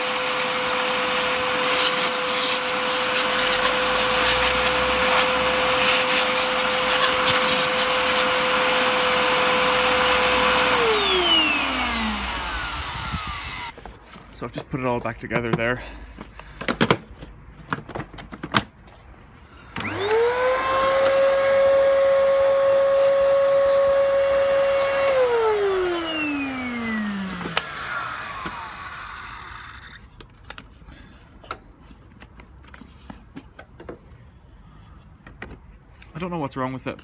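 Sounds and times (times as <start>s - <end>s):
vacuum cleaner motor whining: 0.0s - 13.8s, 19.7s - 30.0s.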